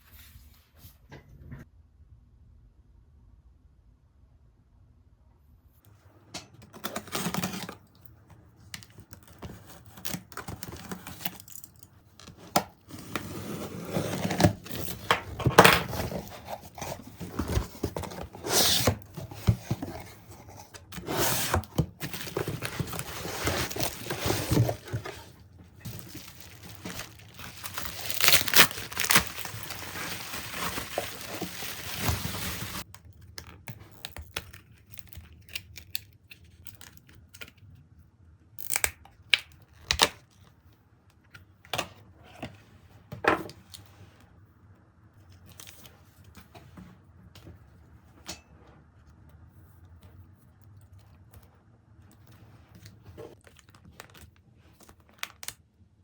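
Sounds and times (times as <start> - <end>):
wrapping rustling and tearing: 8.8 - 32.9.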